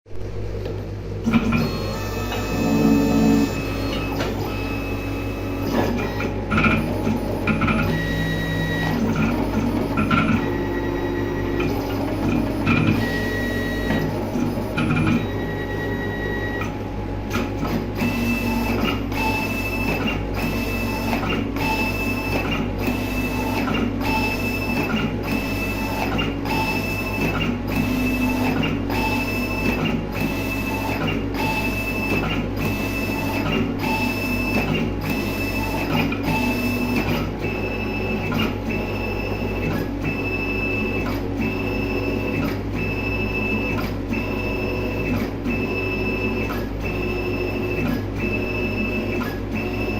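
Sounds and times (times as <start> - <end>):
high motor whine: 1.1 - 17.3.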